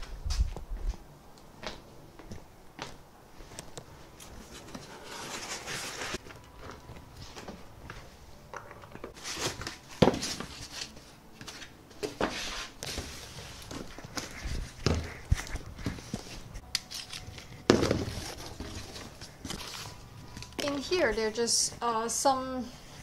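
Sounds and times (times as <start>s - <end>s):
foam and cardboard rustling: 4.4s - 7.5s, 9.2s - 16.6s, 17.4s - 20.1s.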